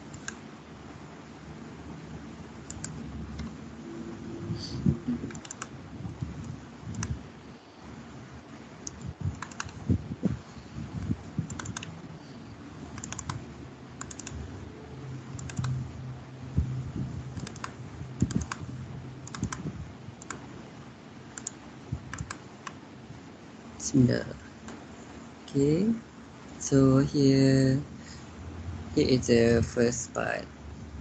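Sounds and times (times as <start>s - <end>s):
faint low hum: 0.0s - 31.0s
keyboard and mouse clicking: 0.1s - 0.4s, 2.6s - 3.5s, 5.2s - 5.7s, 6.4s - 7.2s, 8.8s - 9.8s, 11.0s - 12.0s, 13.0s - 13.4s, 14.0s - 14.4s, 15.4s - 15.8s, 17.3s - 20.4s, 21.4s - 22.8s.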